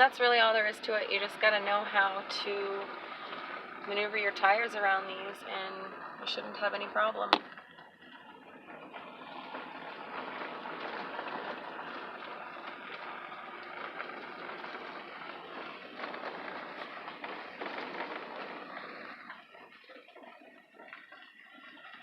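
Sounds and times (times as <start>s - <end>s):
small clicks and rattles: 0.0s - 22.0s
tyres on gravel: 0.0s - 22.0s.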